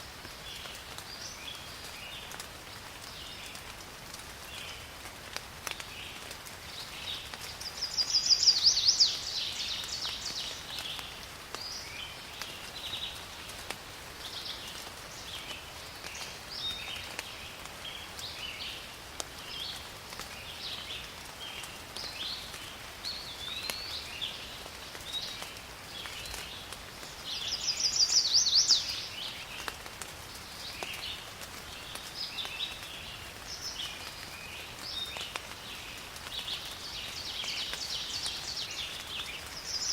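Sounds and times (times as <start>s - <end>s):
rain hissing: 0.0s - 39.9s
rapid bird song: 5.7s - 13.6s, 14.2s - 39.9s.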